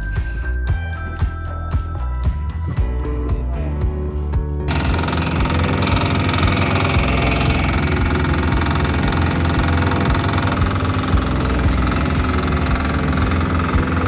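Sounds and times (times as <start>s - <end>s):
engine running steadily: 4.7s - 14.0s.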